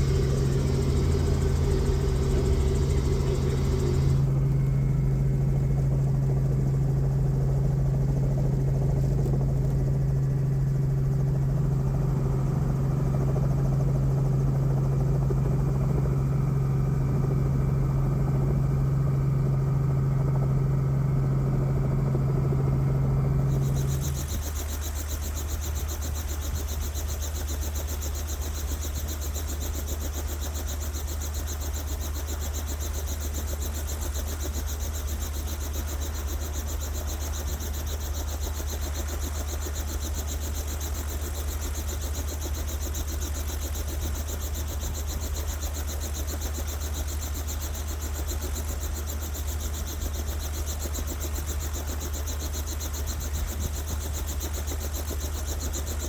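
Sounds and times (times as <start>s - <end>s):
low engine drone: 0.0s - 27.6s.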